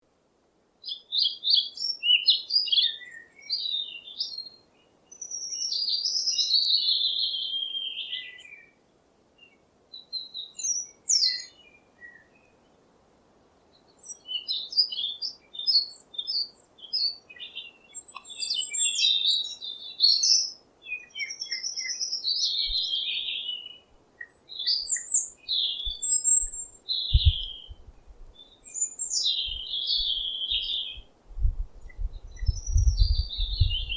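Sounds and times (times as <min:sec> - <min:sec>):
songbirds chirping and singing: 0:13.9 - 0:33.9.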